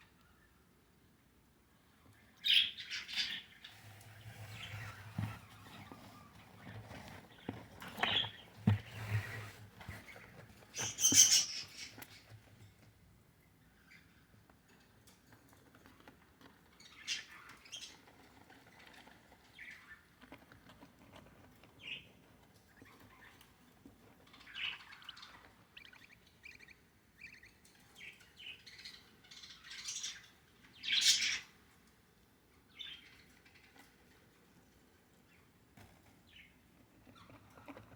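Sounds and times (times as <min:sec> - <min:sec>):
budgerigars chirping and squawking: 0:02.4 - 0:12.4, 0:16.8 - 0:18.1, 0:24.2 - 0:31.6.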